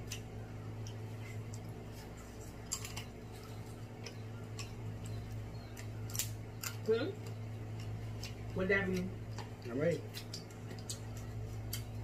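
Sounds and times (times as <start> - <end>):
steady low hum: 0.0 - 12.0
crab shells cracking: 3.9 - 8.5.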